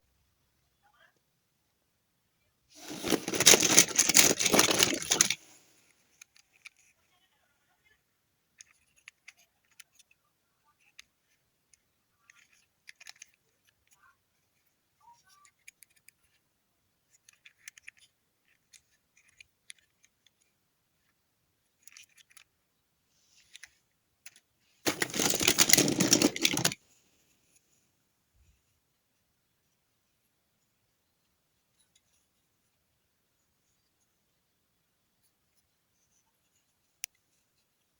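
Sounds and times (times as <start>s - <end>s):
packaging tearing and rustling: 2.8s - 5.5s, 24.9s - 26.8s
faint plastic clicks and rattles: 2.8s - 7.3s, 8.5s - 26.8s, 31.7s - 32.5s.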